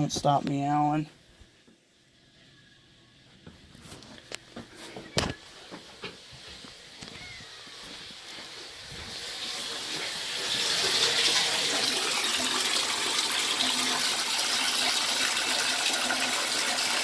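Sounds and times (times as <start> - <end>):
water running from faucet: 7.6 - 17.0.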